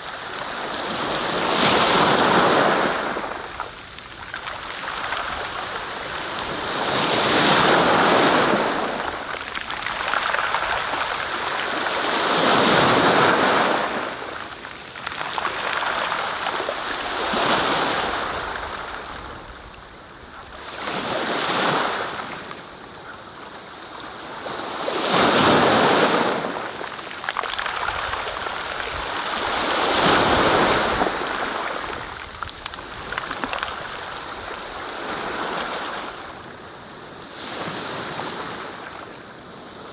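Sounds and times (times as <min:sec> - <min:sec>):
waves washing on shore: 0:00.0 - 0:39.9.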